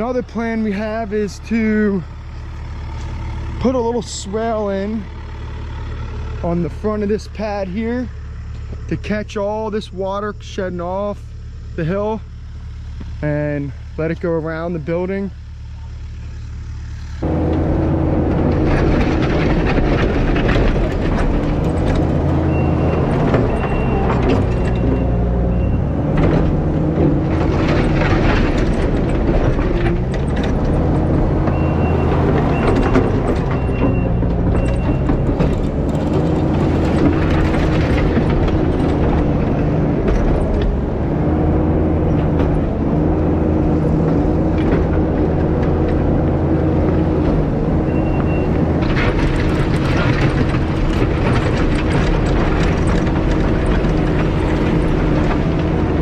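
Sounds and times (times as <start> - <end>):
diesel engine working hard: 0.0 - 56.0
backup alarm beeping: 22.4 - 26.0.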